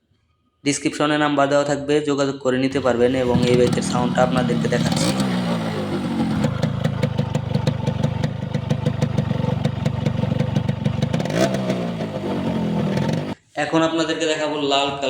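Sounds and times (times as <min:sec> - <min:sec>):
two-stroke engine idling and revving: 0:02.7 - 0:13.4.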